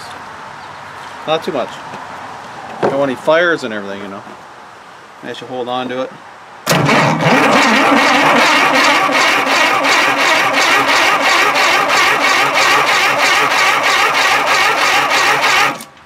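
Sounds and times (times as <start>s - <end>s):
engine cranking on starter: 6.6s - 15.9s.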